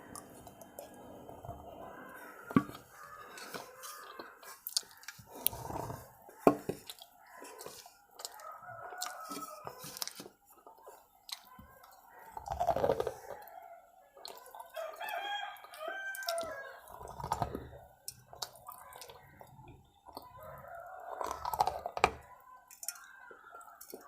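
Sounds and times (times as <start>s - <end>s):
wet chewing: 0.0s - 24.0s
crunchy bites: 11.2s - 13.5s, 20.1s - 24.0s.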